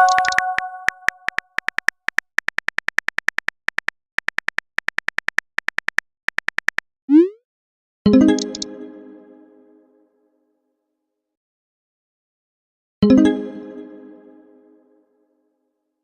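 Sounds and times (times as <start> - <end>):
chiming notification ding: 0.0 - 1.2
keyboard tapping clicks: 0.0 - 6.8.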